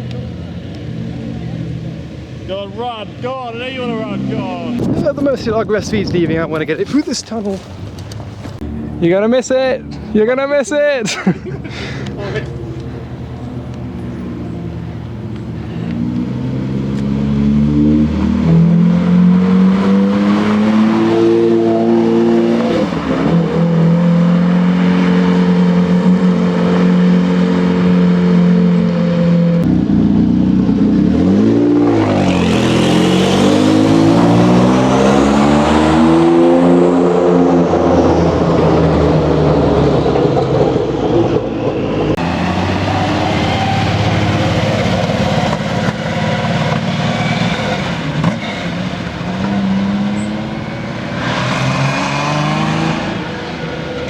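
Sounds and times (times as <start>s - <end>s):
supercar engine revving past: 15.8s - 54.0s
car engine revving hard: 15.9s - 54.0s.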